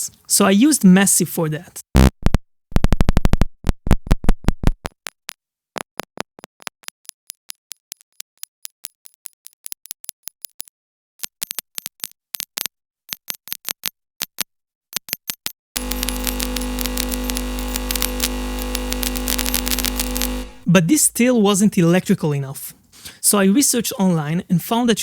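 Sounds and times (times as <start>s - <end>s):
electrical buzzing hum: 2.0s - 3.4s, 15.8s - 21.1s
electrical spark crackle: 15.8s - 20.7s.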